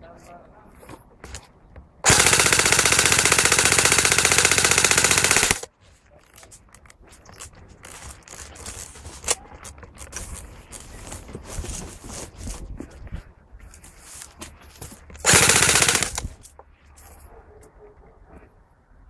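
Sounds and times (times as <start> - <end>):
airsoft gun full-auto burst: 2.1 - 5.7, 15.2 - 16.4.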